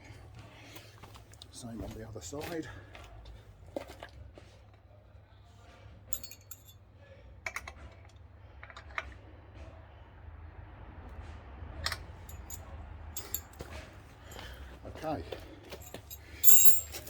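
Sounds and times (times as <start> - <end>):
spanner clinking on metal: 6.1 - 6.7, 13.2 - 13.6, 15.8 - 17.0.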